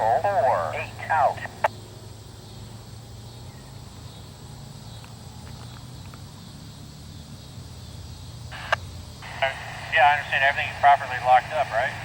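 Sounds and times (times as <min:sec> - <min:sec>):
low steady hum: 0:00.0 - 0:01.8, 0:08.5 - 0:12.0
insects chirring: 0:00.0 - 0:12.0.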